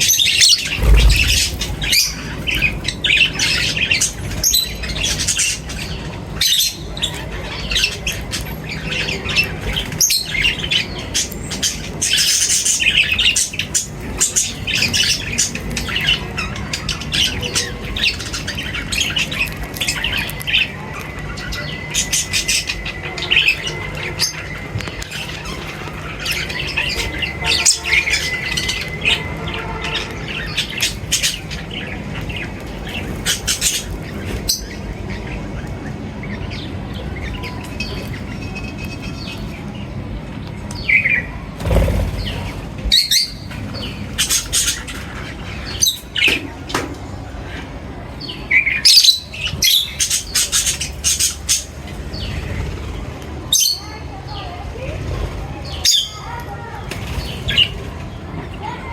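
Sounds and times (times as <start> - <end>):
birds chirping and squawking: 0.0 - 40.0, 40.6 - 58.9
low thump: 0.8 - 2.0.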